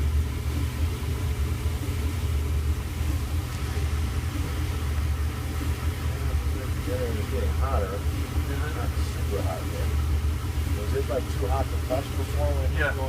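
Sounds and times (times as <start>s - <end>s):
clothes dryer rumbling: 0.0s - 13.0s.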